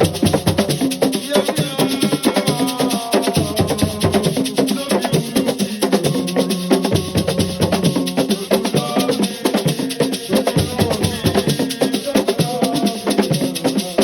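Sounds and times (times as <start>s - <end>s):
fast hand percussion music: 0.0s - 14.0s.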